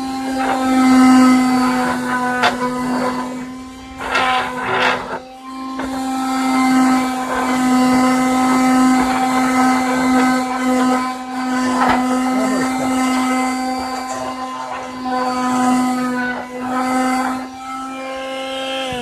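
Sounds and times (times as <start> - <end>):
electric sander motor hum: 0.0 - 19.0.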